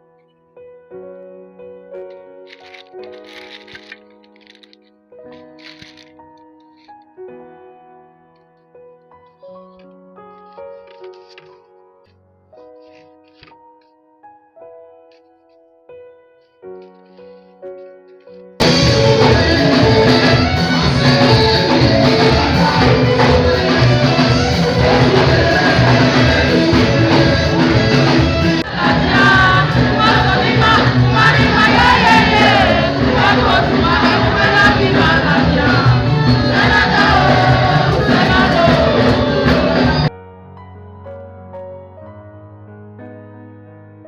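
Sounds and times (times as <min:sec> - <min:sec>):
soft piano notes: 0:00.0 - 0:18.8
background music with guitar and beat: 0:18.6 - 0:40.1.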